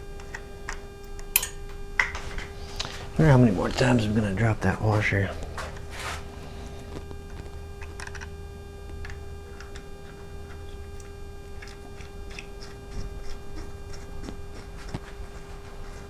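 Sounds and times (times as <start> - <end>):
steady electrical hum: 0.0 - 16.0
clicks and taps of metal tools: 0.2 - 2.2.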